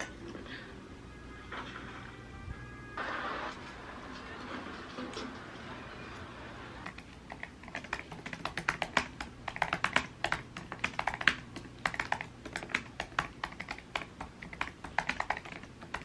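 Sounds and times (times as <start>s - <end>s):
typing on laptop keyboard: 6.8s - 16.0s.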